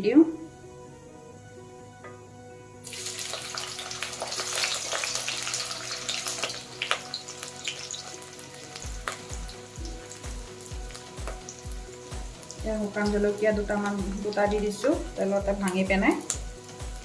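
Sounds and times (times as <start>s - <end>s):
onions sizzling in hot oil: 2.8s - 17.0s.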